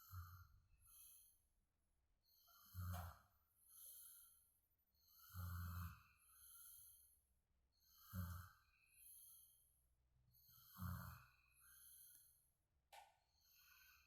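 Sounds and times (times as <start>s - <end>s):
soft breath: 2.9s - 4.6s, 5.3s - 7.3s, 8.2s - 9.8s, 10.4s - 12.5s
person snoring: 5.2s - 6.1s, 10.6s - 11.9s.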